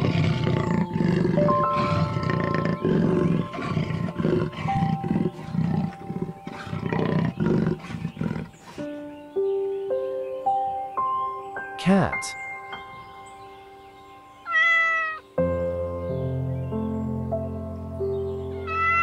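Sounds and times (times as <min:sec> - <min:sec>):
leopard rasping grunts: 0:00.0 - 0:09.2.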